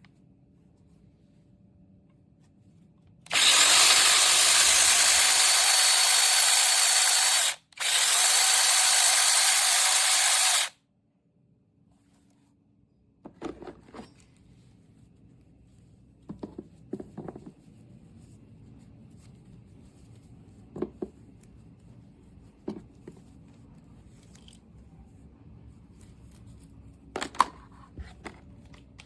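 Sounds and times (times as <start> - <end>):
electric chainsaw running: 3.3 - 10.7.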